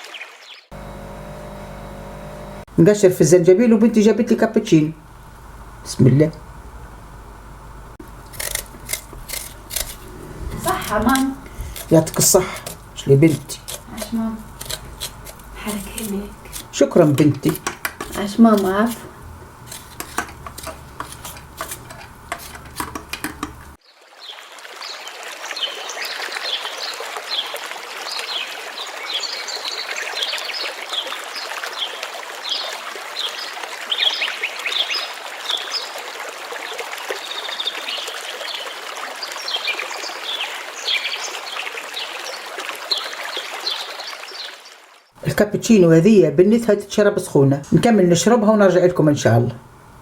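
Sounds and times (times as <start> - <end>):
stream water running: 0.0 - 49.7.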